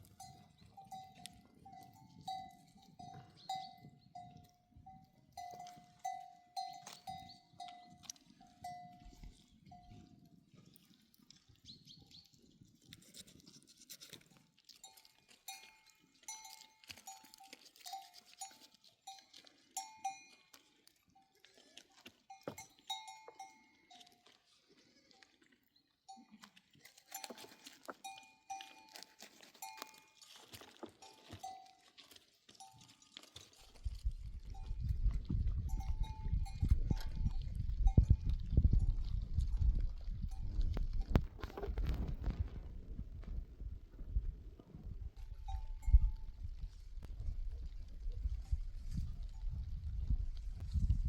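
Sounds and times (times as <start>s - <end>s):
animal bells clinking: 0.0s - 10.8s, 14.2s - 25.4s, 26.0s - 41.6s, 45.2s - 46.9s.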